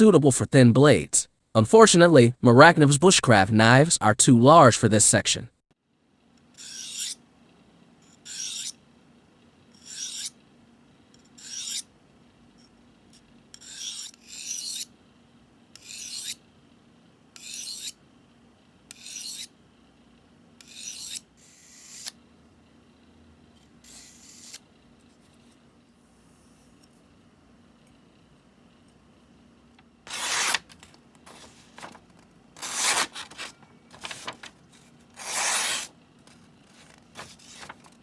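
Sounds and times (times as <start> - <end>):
knife rasping through sharpener: 8.3 - 8.8, 9.8 - 10.3, 11.4 - 11.8, 13.6 - 14.9, 23.9 - 24.6, 30.1 - 30.6, 32.6 - 33.5, 35.2 - 35.9.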